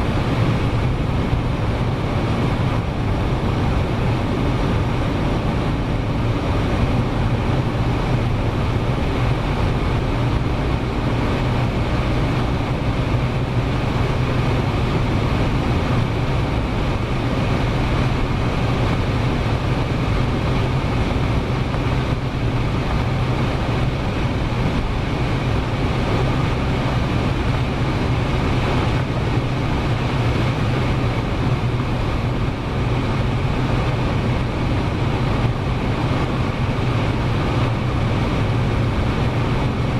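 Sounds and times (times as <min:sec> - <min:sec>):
car engine drone: 0:00.0 - 0:39.9
road and wind noise: 0:00.0 - 0:39.9.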